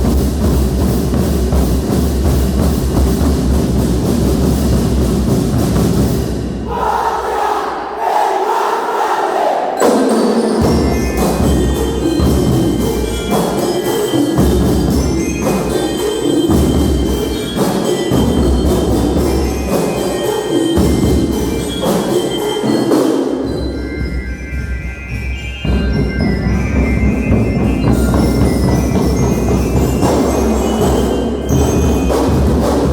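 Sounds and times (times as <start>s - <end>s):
marching band drums: 0.0s - 7.0s, 9.8s - 32.9s
mallet percussion melody: 9.8s - 32.9s.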